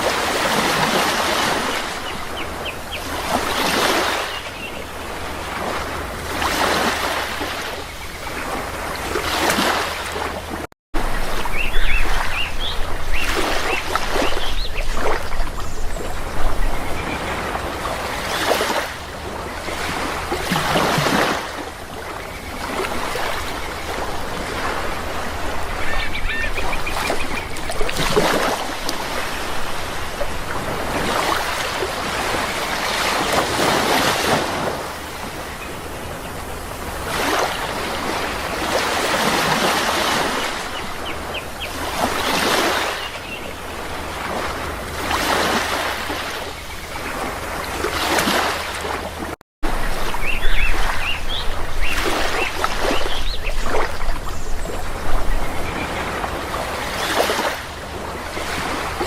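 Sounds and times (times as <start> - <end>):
sea waves washing in and out: 0.0 - 59.0
birds squawking and chirping: 25.6 - 27.8.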